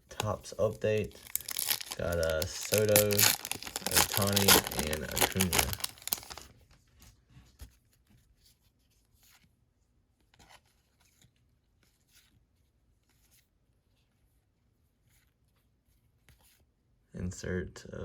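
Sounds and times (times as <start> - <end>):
trading cards rustling and clicking: 0.2 - 6.5.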